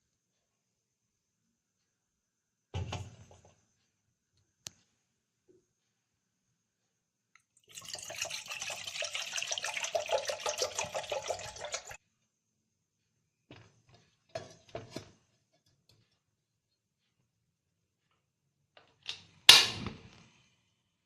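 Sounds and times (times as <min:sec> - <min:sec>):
water running: 0:07.6 - 0:12.0.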